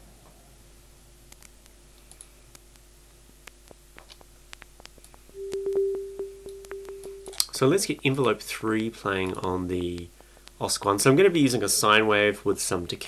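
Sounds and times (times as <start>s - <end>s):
faint steady hum: 0.0s - 13.0s
steady sine-wave tone: 5.3s - 8.0s
synthesized clicks: 5.4s - 7.6s.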